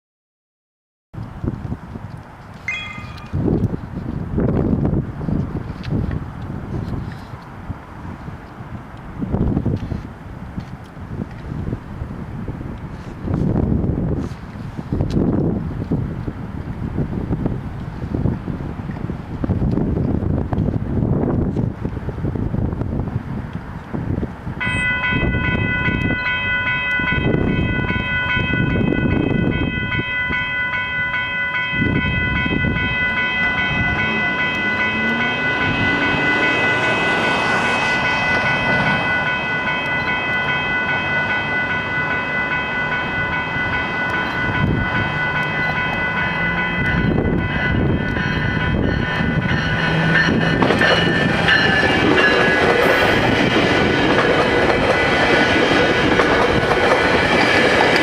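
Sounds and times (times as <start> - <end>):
train rumble and wheel clatter: 1.2 - 58.0
level-crossing warning bell: 2.6 - 3.6, 24.6 - 58.0.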